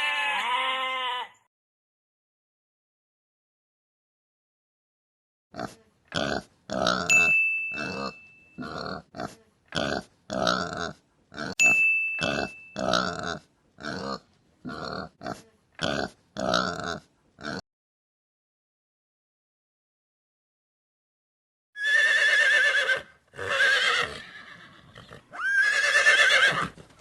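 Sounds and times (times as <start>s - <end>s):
pig grunting: 5.6s - 7.1s, 7.9s - 11.6s, 12.8s - 17.6s
bright ringing ding: 7.1s - 8.6s, 11.6s - 12.9s.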